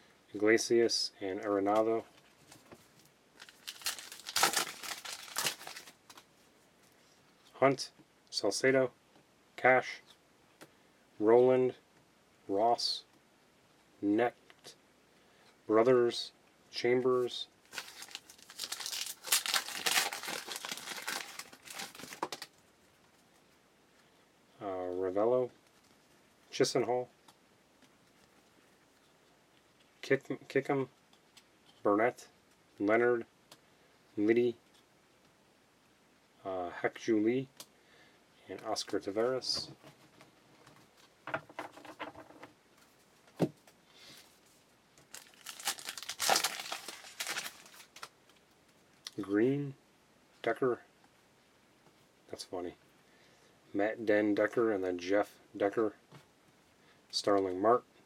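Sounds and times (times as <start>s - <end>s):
wrapper crackling: 3.4s - 6.2s, 17.6s - 22.6s, 45.0s - 48.4s.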